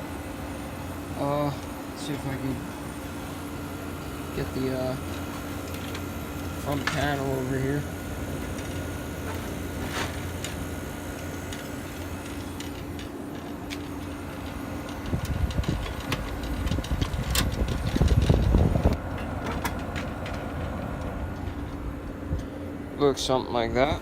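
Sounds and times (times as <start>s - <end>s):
air conditioner humming: 0.0s - 24.0s.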